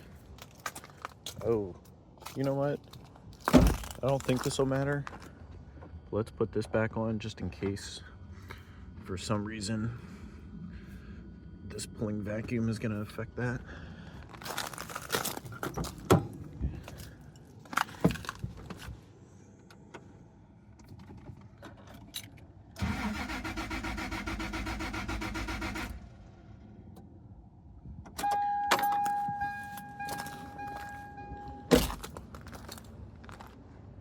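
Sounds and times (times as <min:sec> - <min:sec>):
engine starter cranking: 0:22.8 - 0:26.1
electronic beeping tone: 0:28.2 - 0:31.7
keys rattling: 0:28.7 - 0:33.5.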